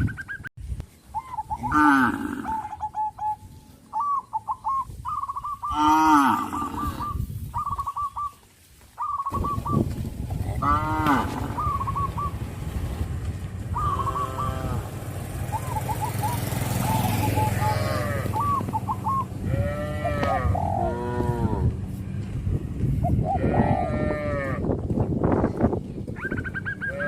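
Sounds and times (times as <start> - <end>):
cows mooing: 1.6 - 2.7, 5.7 - 7.2, 10.4 - 12.4, 13.7 - 15.3, 17.1 - 21.9, 23.2 - 24.7.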